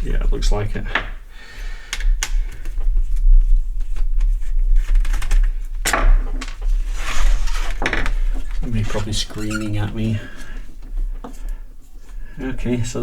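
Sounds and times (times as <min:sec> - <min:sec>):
rustly scrape: 0:06.8 - 0:10.4.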